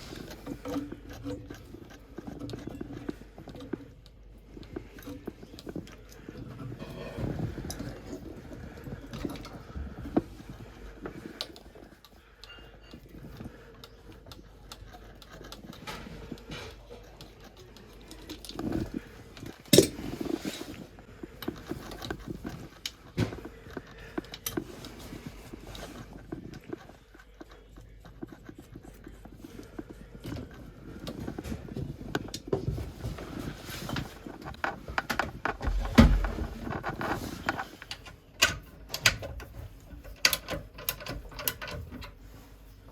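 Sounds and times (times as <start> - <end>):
tools and parts clattering: 18.0 - 26.0, 31.1 - 42.8.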